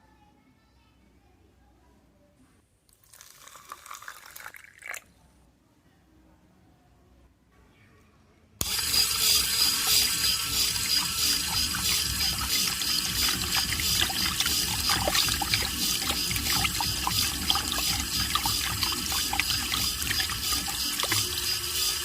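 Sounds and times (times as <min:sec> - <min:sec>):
water trickling and dripping: 0:11.8 - 0:21.2.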